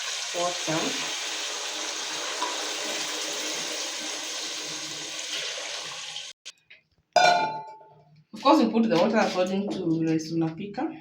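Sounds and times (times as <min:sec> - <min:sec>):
broth pouring into a pot: 0:00.0 - 0:06.4.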